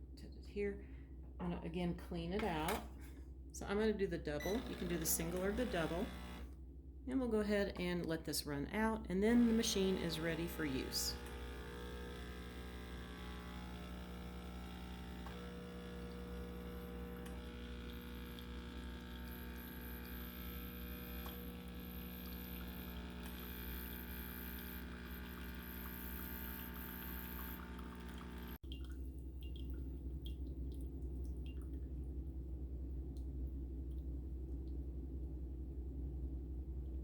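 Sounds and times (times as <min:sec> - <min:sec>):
espresso machine pump humming: 0:04.4 - 0:06.6, 0:09.3 - 0:28.6
water running into cup: 0:09.4 - 0:31.7.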